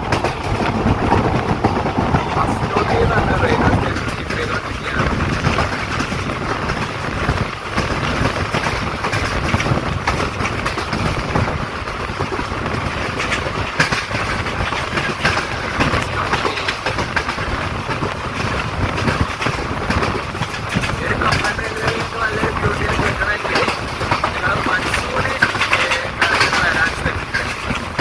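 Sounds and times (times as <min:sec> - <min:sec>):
train rumbling and rattling: 0:00.0 - 0:28.0.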